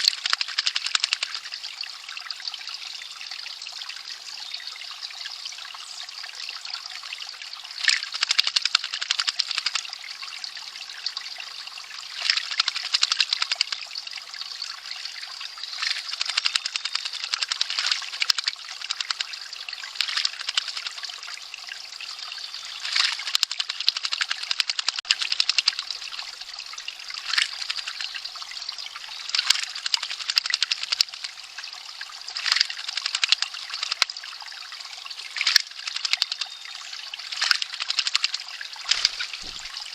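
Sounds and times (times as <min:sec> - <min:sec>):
spring water trickling: 0:00.0 - 0:39.9
bird splashing in water: 0:38.9 - 0:39.9.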